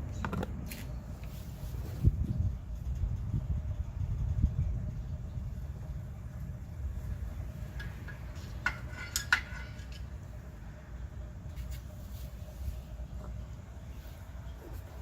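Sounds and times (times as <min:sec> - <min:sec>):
tools clinking on steel: 0:07.7 - 0:10.3.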